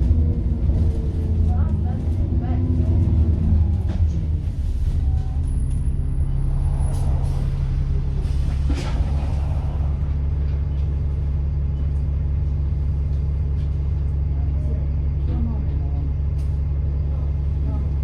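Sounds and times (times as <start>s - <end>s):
diesel bus engine idling: 0.0s - 18.0s.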